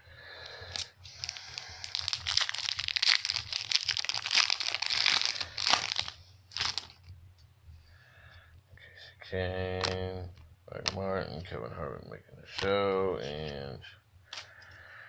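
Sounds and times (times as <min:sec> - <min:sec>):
wrapper crinkling: 0:00.6 - 0:07.1.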